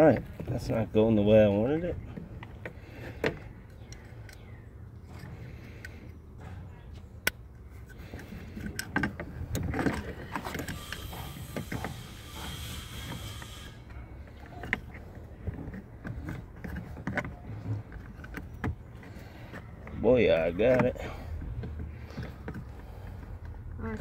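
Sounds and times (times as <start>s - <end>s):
clicks and knocks of handle parts: 1.4s - 12.1s, 13.9s - 24.0s.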